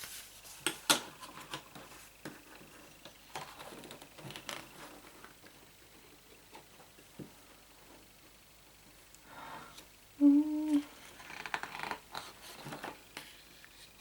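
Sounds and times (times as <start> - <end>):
paper calendar being handled: 0.0 - 6.9, 11.0 - 14.0.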